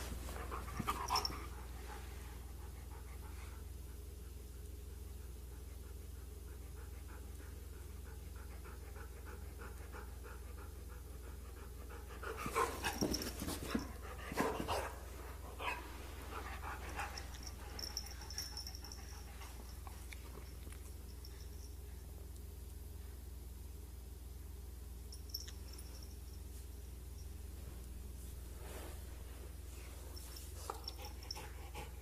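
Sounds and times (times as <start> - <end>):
steady low hum: 0.0 - 32.0
puppy panting: 30.7 - 32.0.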